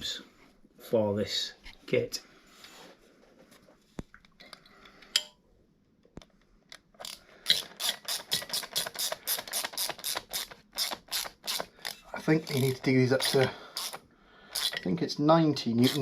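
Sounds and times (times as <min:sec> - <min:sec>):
small tool clicks: 0:06.2 - 0:12.0, 0:12.6 - 0:14.9
ratchet pawl clicking: 0:07.0 - 0:14.9, 0:15.8 - 0:16.0.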